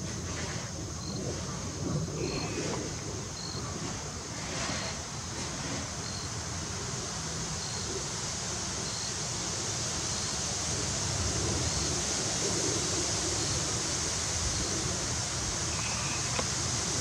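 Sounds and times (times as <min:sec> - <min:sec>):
wind on microphone: 0:00.0 - 0:06.6.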